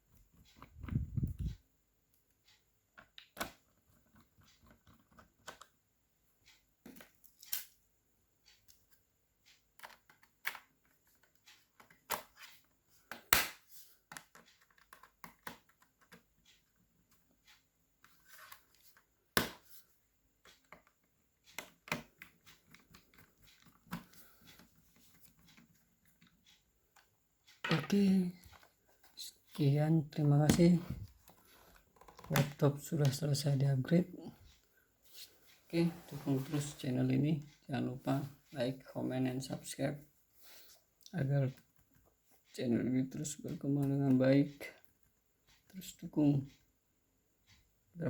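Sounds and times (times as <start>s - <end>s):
laptop handling clicks and knocks: 3.0s - 5.7s, 13.0s - 16.3s.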